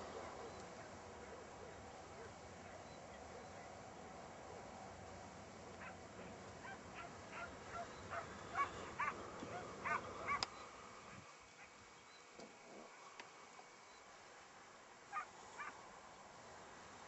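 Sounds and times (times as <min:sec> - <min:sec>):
background hiss: 0:00.0 - 0:17.0
hounds baying and yelping: 0:05.8 - 0:11.8, 0:15.1 - 0:15.8.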